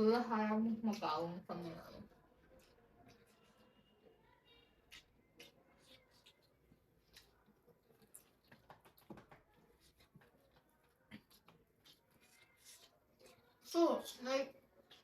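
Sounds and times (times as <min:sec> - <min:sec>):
soft chewing: 0:00.6 - 0:15.0
small clicks and taps: 0:08.4 - 0:10.4.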